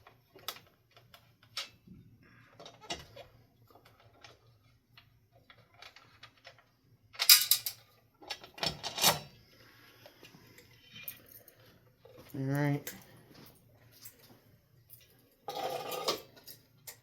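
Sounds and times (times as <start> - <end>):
metal hardware clicking and clattering: 5.5 - 9.4.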